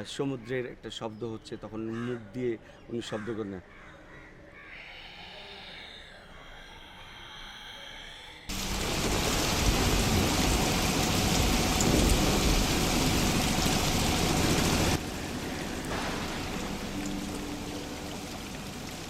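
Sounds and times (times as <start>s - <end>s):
heavy rain rushing: 8.5s - 19.0s
low rumble: 8.5s - 19.0s.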